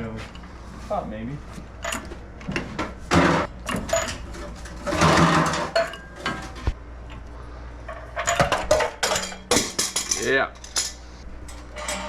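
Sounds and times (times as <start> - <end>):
metal pipe clanking: 1.8 - 6.8.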